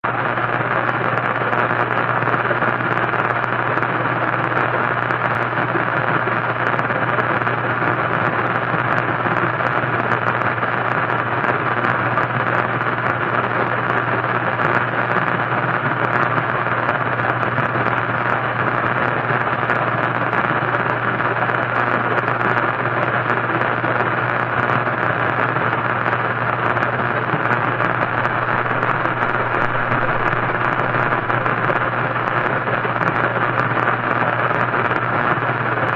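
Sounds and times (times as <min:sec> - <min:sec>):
radio static hiss: 0:00.0 - 0:35.9
low hum: 0:26.7 - 0:34.8.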